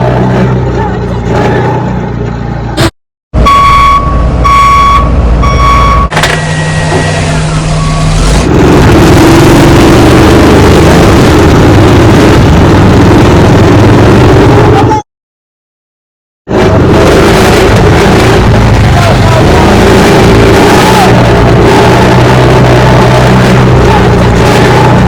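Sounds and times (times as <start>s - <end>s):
noisy engine-like sound effect: 0.0s - 15.0s, 16.5s - 25.0s
short electronic beeps: 3.4s - 8.2s.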